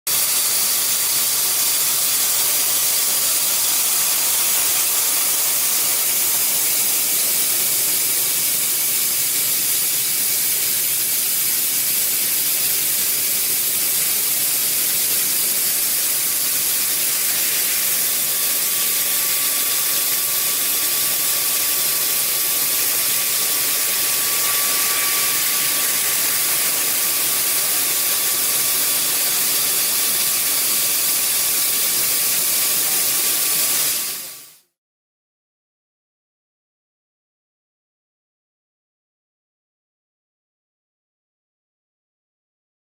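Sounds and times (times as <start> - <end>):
gas jet hissing: 0.1 - 34.6
faint thin whine: 16.3 - 29.6.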